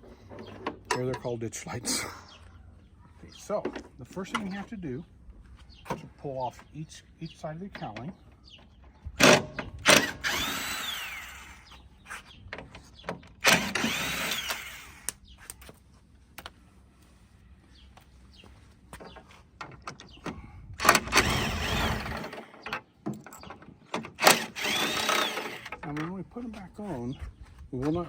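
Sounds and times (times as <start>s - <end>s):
cordless drill spinning: 9.8s - 12.2s, 13.4s - 15.2s, 20.8s - 22.6s, 24.2s - 25.8s.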